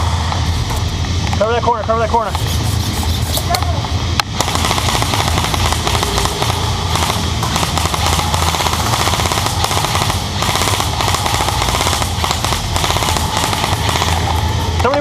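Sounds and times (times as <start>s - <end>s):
airsoft guns firing full auto: 4.4s - 15.0s.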